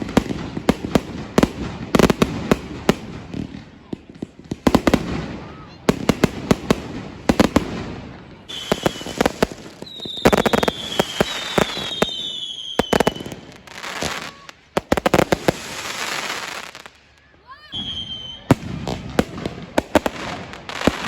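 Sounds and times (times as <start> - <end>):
fireworks bangs and crackles: 0.0 - 21.0
whistling fireworks: 0.0 - 21.0.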